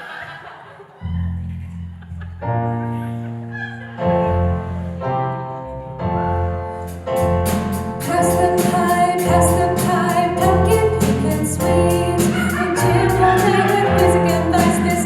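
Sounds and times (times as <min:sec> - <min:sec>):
bass line: 0:01.0 - 0:15.0
piano chords: 0:01.0 - 0:15.0
drums and cymbals: 0:06.9 - 0:15.0.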